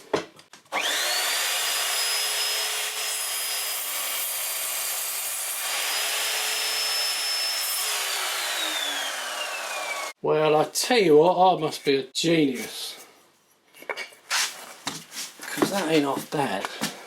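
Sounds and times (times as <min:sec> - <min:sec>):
chop saw high whine: 0:00.7 - 0:10.2
saw blade cutting wood: 0:00.7 - 0:10.2.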